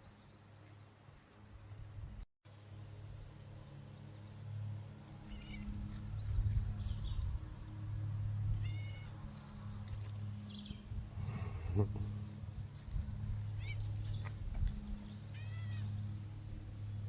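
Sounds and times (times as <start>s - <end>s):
steady low hum: 0.4s - 17.0s
cat chirping meows: 15.4s - 15.8s.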